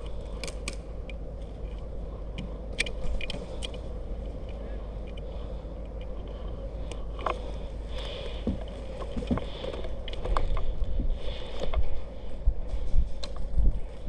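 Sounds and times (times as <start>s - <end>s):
sharp clicks and snaps: 0.0s - 6.1s
faint hum: 0.0s - 14.0s
low outdoor rumble: 0.0s - 14.0s.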